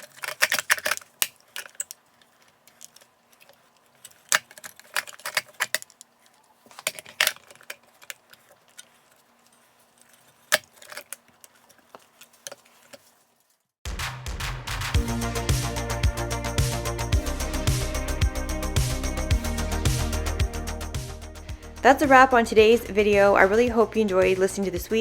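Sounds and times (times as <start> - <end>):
hard objects clicking and clattering: 0.0 - 13.3.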